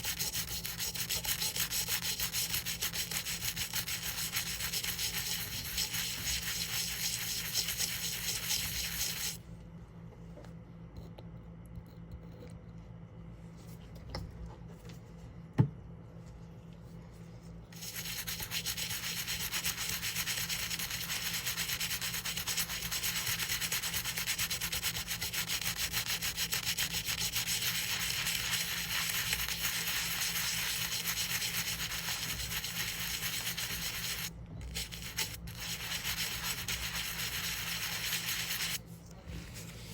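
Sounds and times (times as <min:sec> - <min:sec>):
rubbing a coin: 0:00.0 - 0:09.4, 0:17.7 - 0:38.8.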